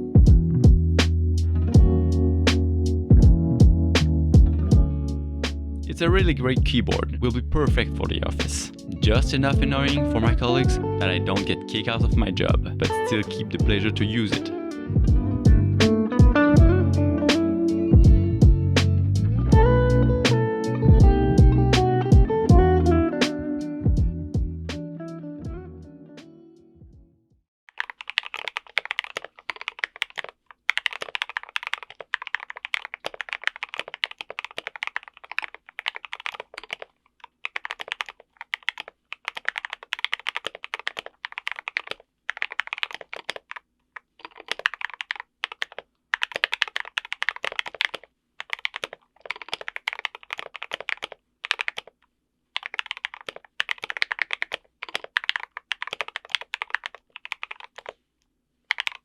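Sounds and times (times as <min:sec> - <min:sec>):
muted mechanical keyboard typing: 0:27.7 - 0:58.0, 0:58.7 - 0:59.0.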